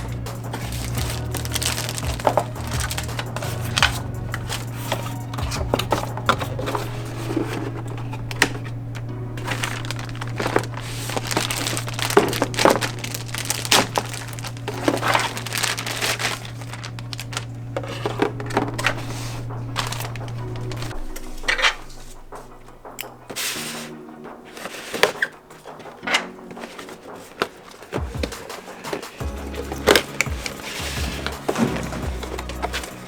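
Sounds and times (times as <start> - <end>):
steady low hum: 0.0 - 23.3
plastic and cardboard crinkling: 0.0 - 33.0.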